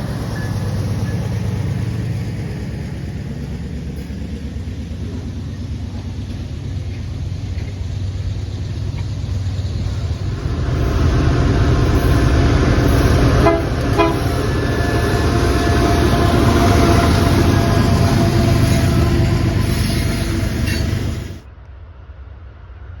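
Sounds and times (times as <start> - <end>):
passing train rumble: 0.0 - 23.0
locomotive horn blasts: 12.9 - 19.7.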